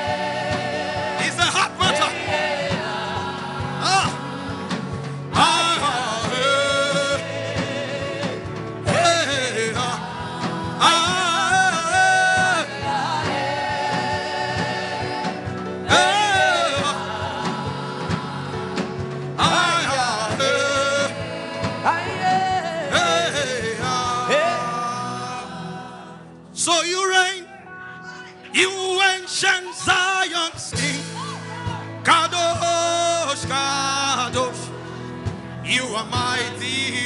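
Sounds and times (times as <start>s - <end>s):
sustained accompaniment with light beat: 0.0s - 26.6s
person singing gospel song: 0.0s - 37.0s.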